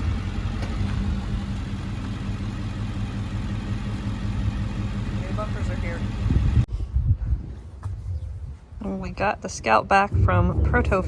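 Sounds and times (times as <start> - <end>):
vehicle engine idling: 0.0 - 6.7.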